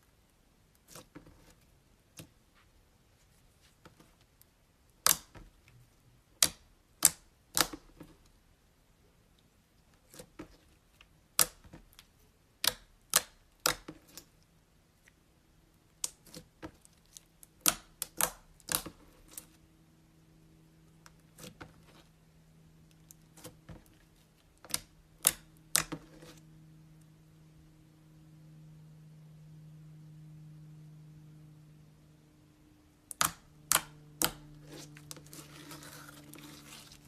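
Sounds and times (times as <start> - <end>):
faint steady hum: 0.0 - 37.0
slime clicking and popping: 5.0 - 5.4, 6.4 - 7.9, 17.5 - 19.0, 33.1 - 35.4.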